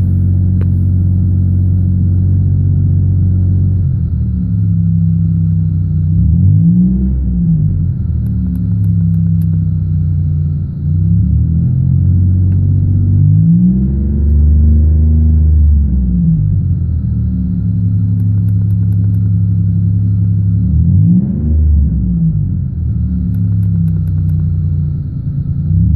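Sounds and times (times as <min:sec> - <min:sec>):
car engine revving: 0:00.0 - 0:25.9.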